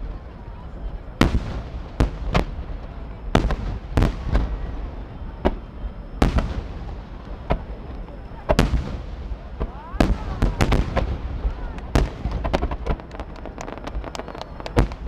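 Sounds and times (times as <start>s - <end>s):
firework shells bursting: 9.6s - 15.0s.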